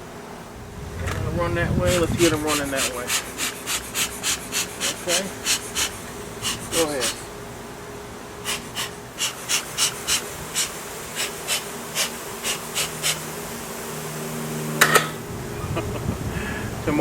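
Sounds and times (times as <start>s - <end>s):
honey bees buzzing: 0.0s - 17.0s
breathy puffs of air: 0.6s - 7.3s, 8.4s - 13.2s, 15.4s - 16.9s.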